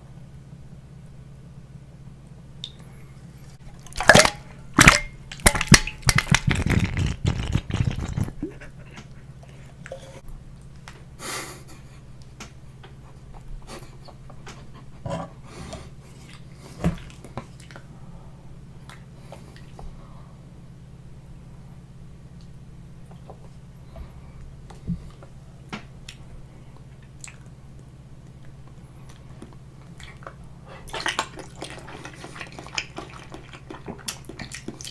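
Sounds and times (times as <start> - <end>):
steady low hum: 0.0 - 34.9
chewing and squishing: 3.6 - 10.0, 16.1 - 17.9, 26.0 - 34.9
mouth clicks and smacks: 3.8 - 9.2, 27.1 - 27.5.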